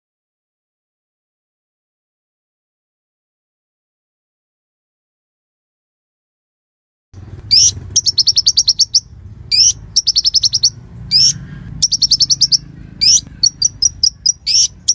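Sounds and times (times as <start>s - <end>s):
songbird singing: 7.2s - 14.9s.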